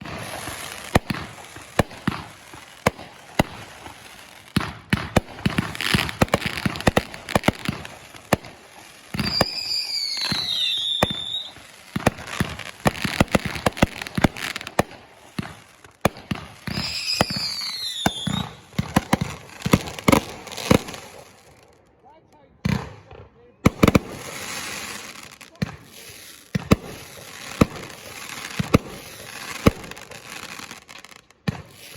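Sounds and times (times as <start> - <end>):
fireworks popping and crackling: 0.0 - 21.9, 22.6 - 31.9
falling firework whistle: 9.2 - 11.6, 16.7 - 18.6.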